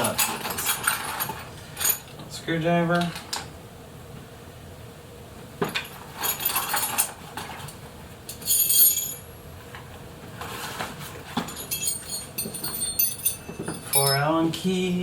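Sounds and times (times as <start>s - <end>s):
metal hand tools clinking: 8.3s - 9.2s, 11.4s - 14.3s.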